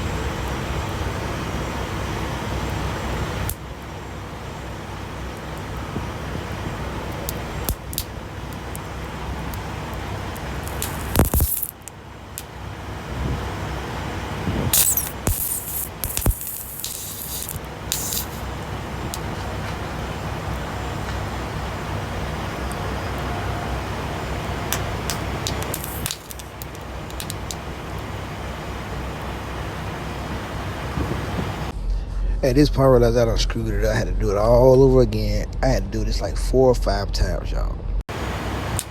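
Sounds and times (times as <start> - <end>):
steady low rumble: 0.0 - 38.9
short hissing bursts: 9.8 - 12.6, 14.6 - 21.1, 23.2 - 31.7.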